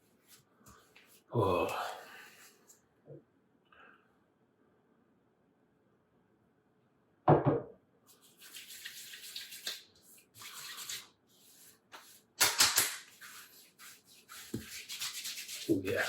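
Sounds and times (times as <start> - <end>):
loud thump: 7.3 - 7.7
water splashed by hand at sink: 8.3 - 11.0.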